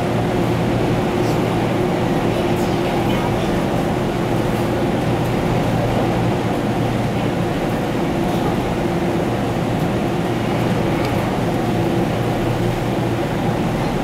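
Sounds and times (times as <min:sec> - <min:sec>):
steady train hum: 0:00.0 - 0:14.0
wheels rumbling on rail: 0:00.0 - 0:14.0.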